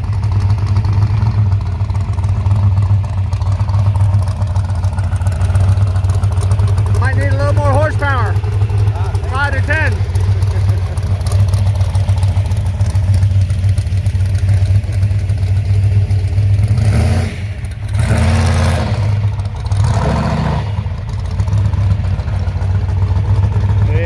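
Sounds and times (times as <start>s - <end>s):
car engines idling: 0.0s - 24.0s
loud car engine: 0.0s - 24.0s.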